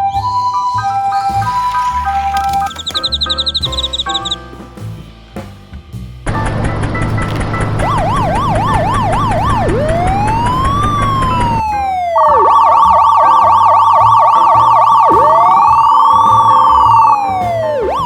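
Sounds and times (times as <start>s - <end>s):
siren yelp and wail: 7.7s - 18.0s.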